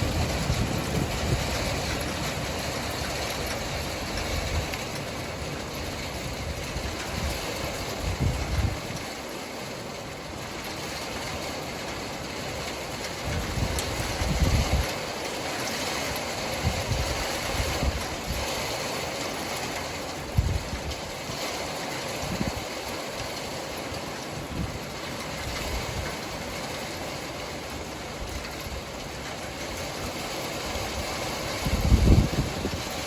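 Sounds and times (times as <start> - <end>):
wind gusts on microphone: 0.0 - 9.2, 13.1 - 15.1, 16.5 - 18.7, 20.2 - 21.5, 22.1 - 22.8, 28.2 - 33.0
hail and rain falling: 0.0 - 33.0.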